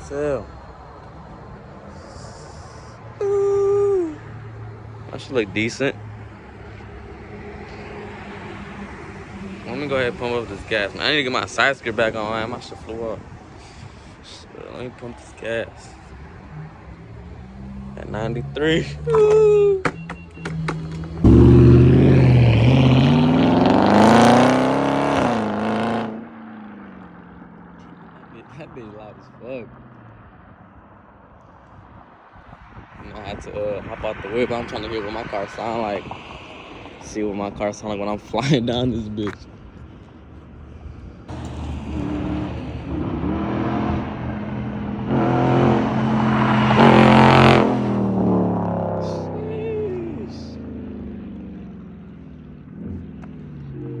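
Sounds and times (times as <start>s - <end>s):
car engine accelerating hard: 20.5s - 28.8s, 41.3s - 54.0s.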